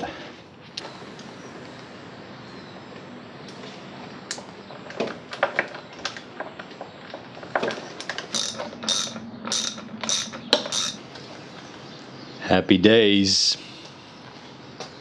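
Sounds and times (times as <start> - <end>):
hand tool clicks: 8.3 - 11.0
rasping ratchet strokes: 8.3 - 11.0.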